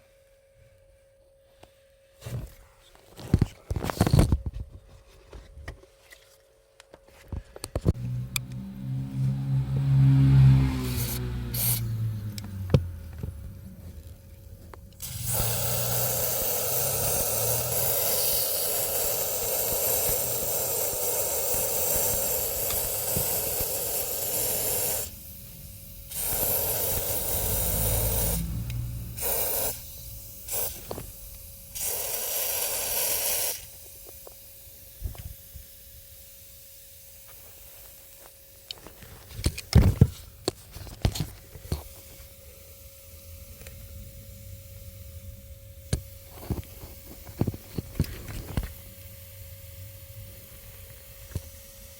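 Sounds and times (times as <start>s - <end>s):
pressurised spray hissing: 8.7s - 12.7s, 15.0s - 34.0s.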